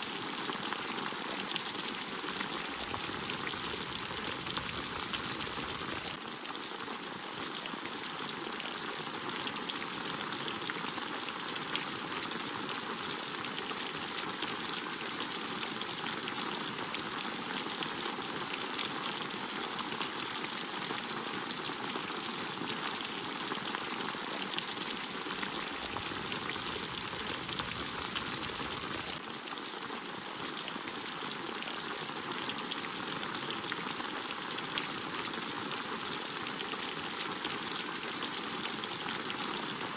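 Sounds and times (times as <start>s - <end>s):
steady rain falling: 2.3s - 6.2s, 25.0s - 29.2s.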